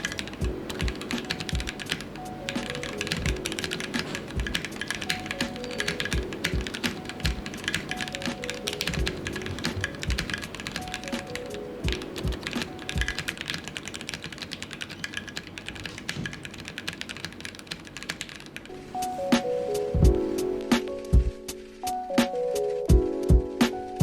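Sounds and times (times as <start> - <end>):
background music: 0.0 - 14.0, 18.7 - 24.0
fast typing on mechanical keyboard: 0.0 - 18.7.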